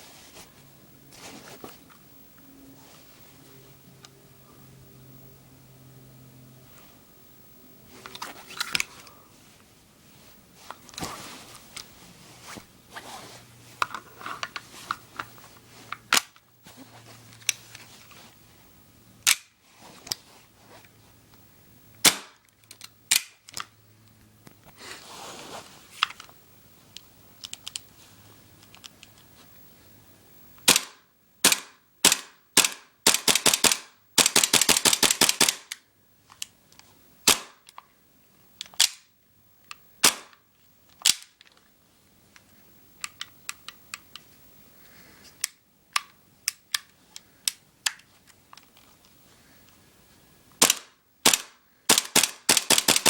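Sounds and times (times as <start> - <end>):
airsoft pistol shots: 22.0 - 22.4, 30.7 - 35.7, 37.3 - 37.6, 40.0 - 40.3, 50.6 - 53.0.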